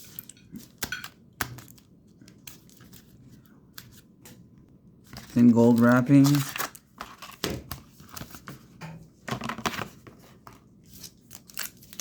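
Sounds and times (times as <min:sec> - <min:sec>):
foil wrapper crinkling: 0:05.2 - 0:07.4.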